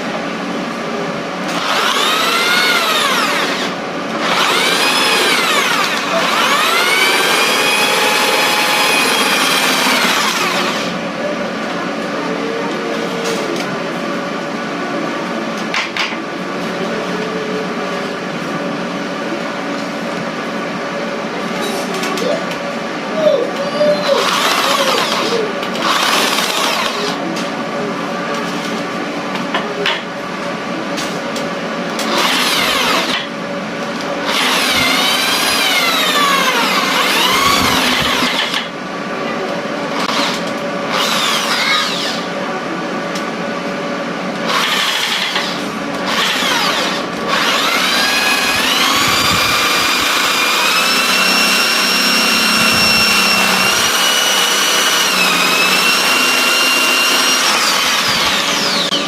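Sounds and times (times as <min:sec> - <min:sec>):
electric drill motor whining: 0:01.5 - 0:11.0, 0:24.2 - 0:27.2, 0:32.0 - 0:33.2, 0:34.2 - 0:38.7, 0:40.0 - 0:42.3, 0:44.5 - 0:59.0.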